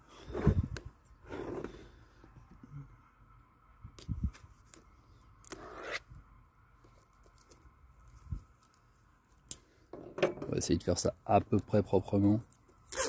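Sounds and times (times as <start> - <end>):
cardboard scrapes and knocks: 0.2 - 1.8.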